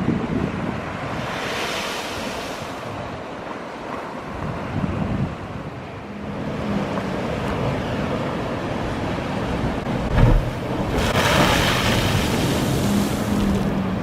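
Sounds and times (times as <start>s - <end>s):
sea surf washing: 0.0s - 14.0s
hissing rush of spray: 1.2s - 2.9s.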